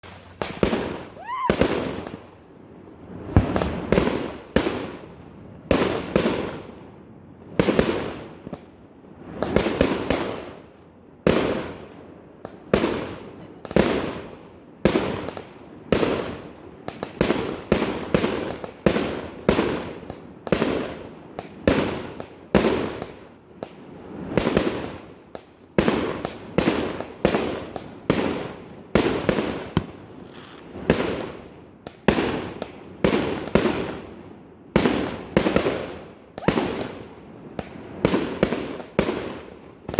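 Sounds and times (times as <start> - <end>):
fireworks bursting with bangs: 0.0 - 39.9
rising firework whistle: 0.7 - 2.1.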